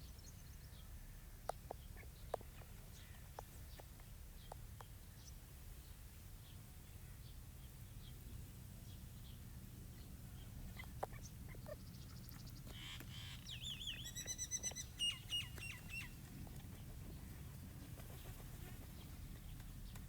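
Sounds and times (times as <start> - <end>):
partridge chirping calls: 10.0 - 16.2.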